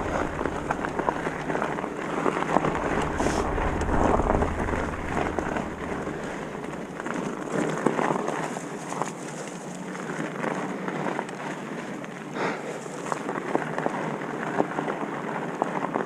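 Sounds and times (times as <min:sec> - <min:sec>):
wind on microphone: 0:00.0 - 0:09.0
bike tyre noise with rattles: 0:00.0 - 0:16.0.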